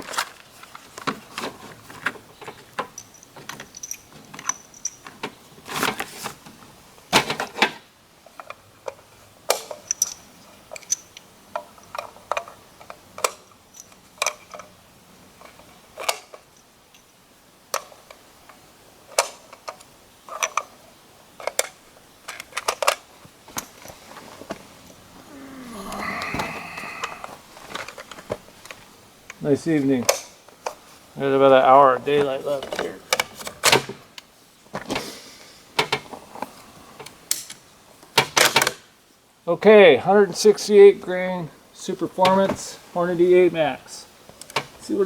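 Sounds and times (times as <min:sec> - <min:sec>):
metallic clicks of cartridges: 0:09.7 - 0:14.7.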